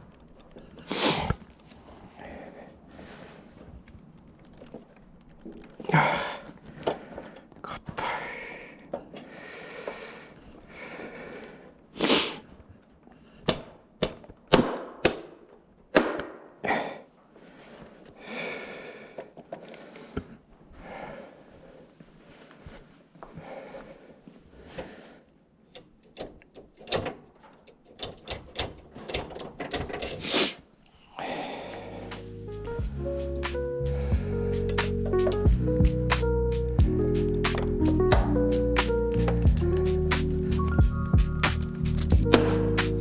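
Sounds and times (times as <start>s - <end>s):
metallic clicks and knocks: 25.7s - 30.2s.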